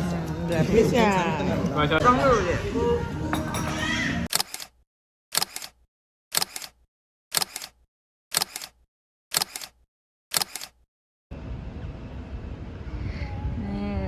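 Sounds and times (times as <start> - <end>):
camera shutter clicks: 4.3 - 10.8.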